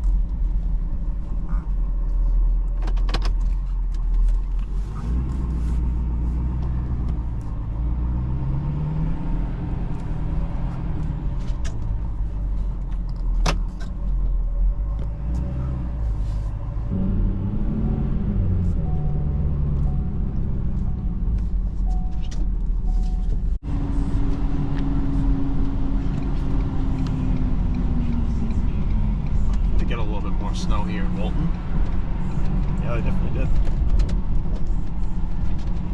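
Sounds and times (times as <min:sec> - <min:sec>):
truck engine running: 0:03.7 - 0:35.9.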